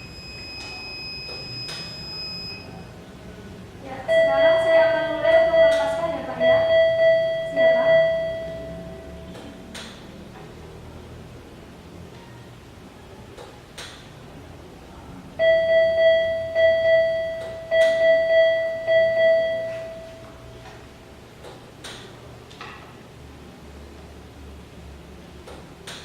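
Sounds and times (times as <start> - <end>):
medical alarm beeping: 0.0 - 3.0, 4.0 - 9.6, 15.4 - 20.6.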